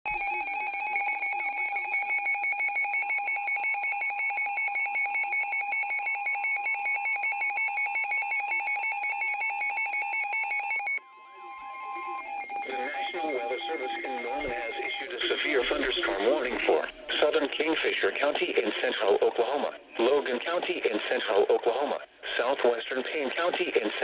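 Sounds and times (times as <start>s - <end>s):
steady warning tone: 0.2s - 21.8s
high-pitched warbling alarm: 8.4s - 19.5s.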